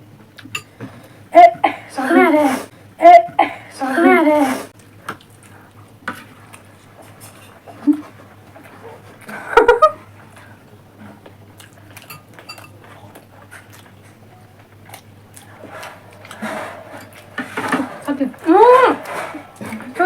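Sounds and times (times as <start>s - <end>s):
voices: 1.3s - 4.8s, 14.1s - 20.0s
plates and cutlery clinking: 11.9s - 13.0s, 15.4s - 20.0s.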